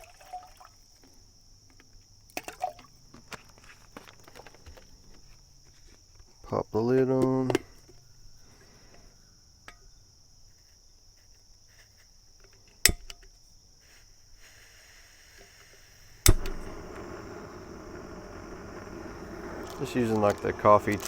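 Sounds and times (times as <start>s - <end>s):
high insect trill: 0.0s - 21.0s
sharp clicks of kettle: 12.8s - 13.3s, 15.4s - 21.0s
steady rushing hiss: 13.4s - 21.0s.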